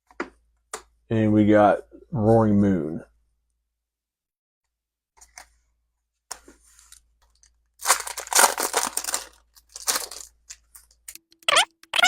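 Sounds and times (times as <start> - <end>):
foil wrapper tearing and crinkling: 7.8 - 10.7.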